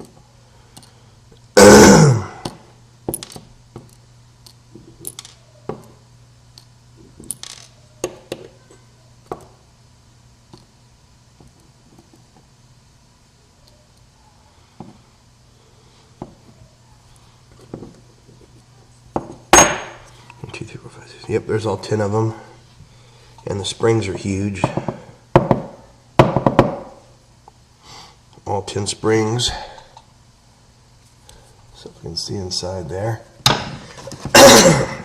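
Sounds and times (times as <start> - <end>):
small metal parts clicking: 2.4 - 5.4, 6.6 - 7.8.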